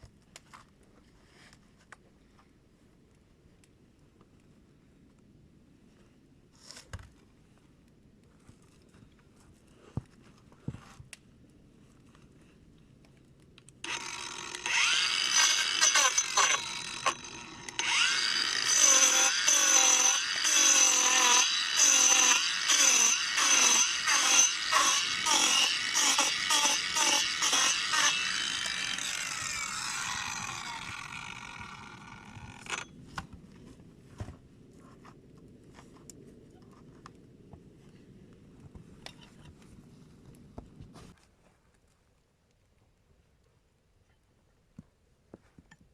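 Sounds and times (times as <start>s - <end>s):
wood being sawn: 13.8s - 32.9s.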